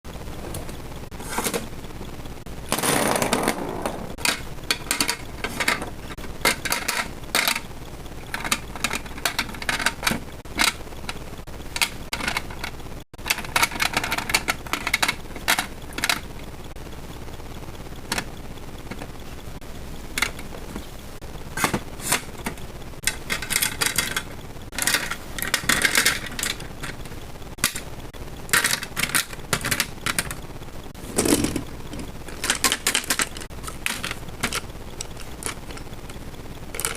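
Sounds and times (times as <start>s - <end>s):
small items rustling in drawer: 31.0s - 36.2s.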